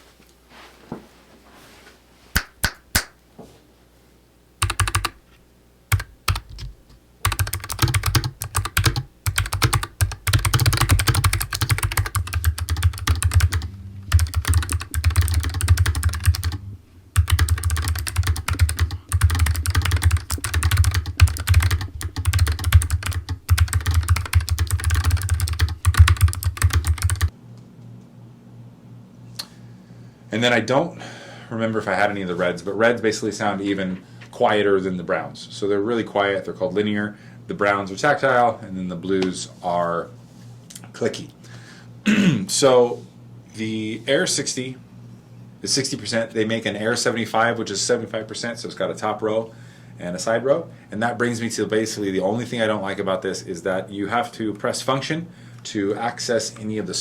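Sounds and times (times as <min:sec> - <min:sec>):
typing on clicky mechanical keyboard: 0:04.6 - 0:05.2, 0:05.9 - 0:16.6, 0:17.2 - 0:27.3.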